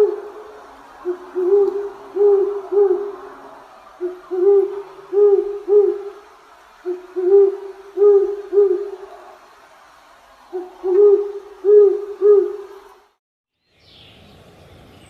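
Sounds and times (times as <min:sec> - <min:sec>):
bird hooting: 0:00.0 - 0:06.2, 0:06.8 - 0:09.3, 0:10.5 - 0:12.9.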